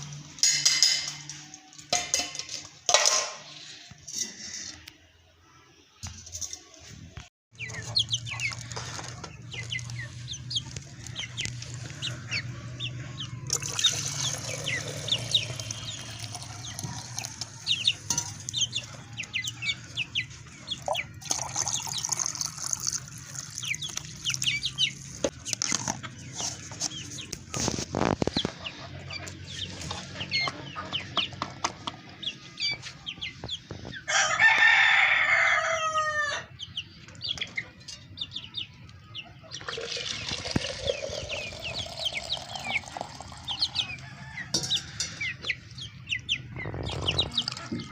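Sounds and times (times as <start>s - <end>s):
chickens clucking: 6.0s - 47.9s
rooster crowing: 34.1s - 36.5s, 43.9s - 45.2s.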